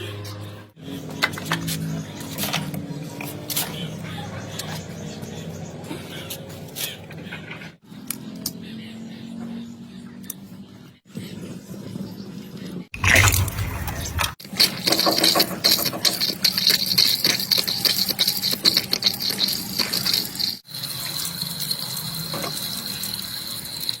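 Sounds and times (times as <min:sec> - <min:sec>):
water gushing from a tap: 0:13.0 - 0:24.0.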